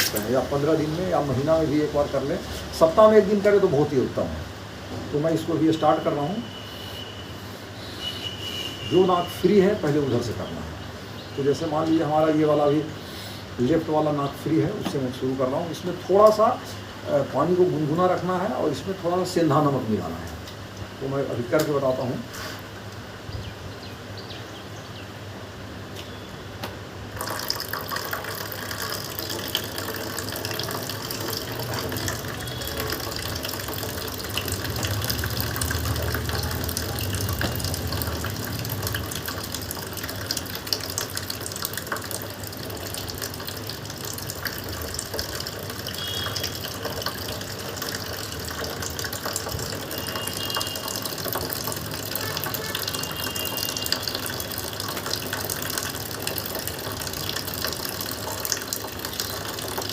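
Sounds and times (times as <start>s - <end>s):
water trickling and splashing: 27.1s - 59.9s.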